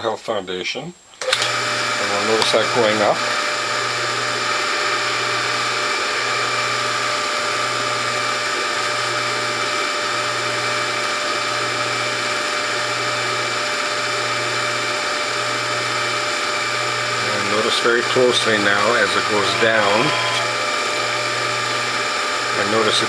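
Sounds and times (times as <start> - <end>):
hydraulic press motor whining: 1.2 - 7.1, 16.9 - 23.0.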